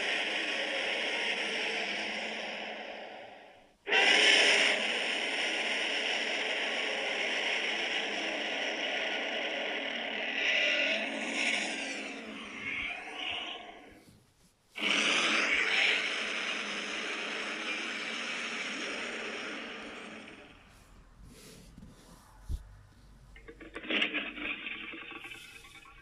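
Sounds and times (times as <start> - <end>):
harsh monster roar: 0.0 - 14.0, 14.8 - 20.6.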